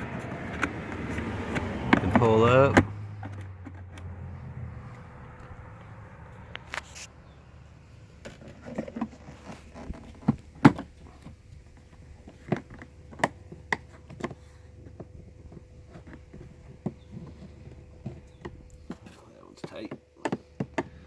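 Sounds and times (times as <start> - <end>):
plastic clicks and knocks: 0.2 - 4.1, 8.2 - 21.0.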